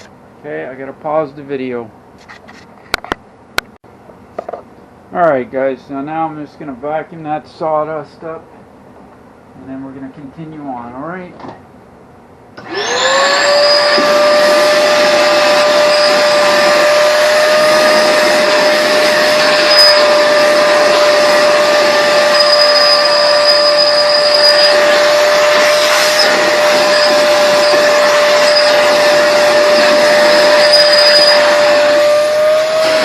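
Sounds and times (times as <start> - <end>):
shop vac motor whine: 12.6 - 33.0.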